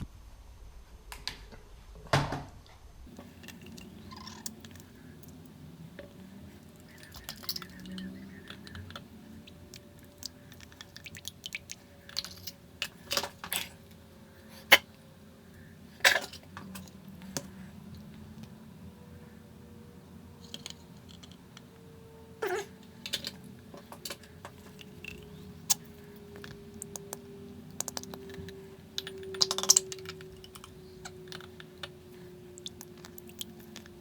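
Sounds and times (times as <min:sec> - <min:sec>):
hard objects clicking and knocking: 0:23.1 - 0:32.0.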